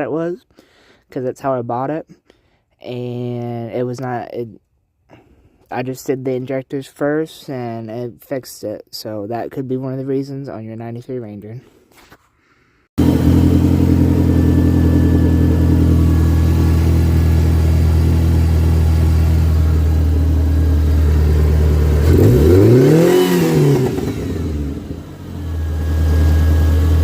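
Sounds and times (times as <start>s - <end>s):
car engine idling and revving: 13.0s - 27.0s.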